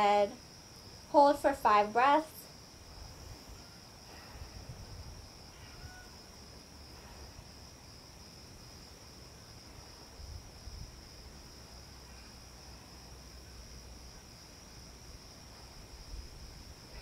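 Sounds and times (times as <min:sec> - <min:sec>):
wind rumble on microphone: 0:02.8 - 0:06.1, 0:10.1 - 0:11.3, 0:15.8 - 0:17.0
high-pitched insect chirring: 0:05.3 - 0:06.5.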